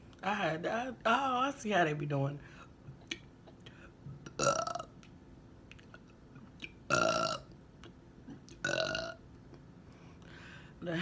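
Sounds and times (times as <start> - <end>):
woman burping: 4.4 - 4.9, 6.9 - 7.5, 8.6 - 9.2.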